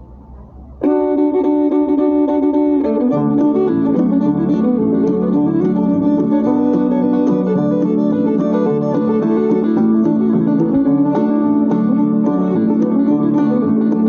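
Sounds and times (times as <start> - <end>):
plucked string music: 0.0 - 14.0.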